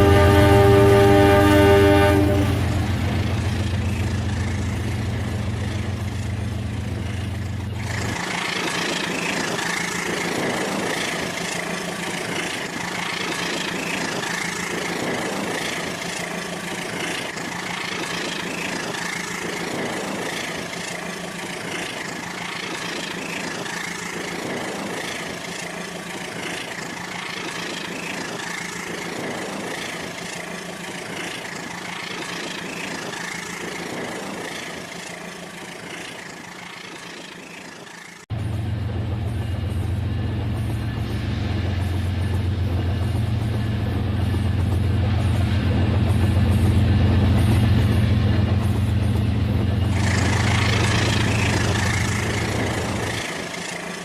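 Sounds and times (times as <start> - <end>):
toy train horn effect: 0.0 - 2.9
toy train running on track: 3.1 - 38.3, 40.4 - 54.0
engine rumble sound effect: 31.3 - 54.0.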